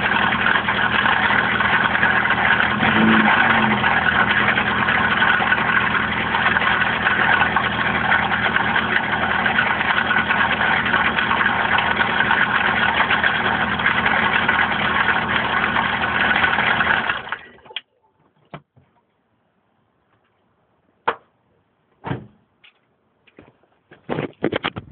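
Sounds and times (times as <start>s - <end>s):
petrol engine running: 0.0s - 17.6s.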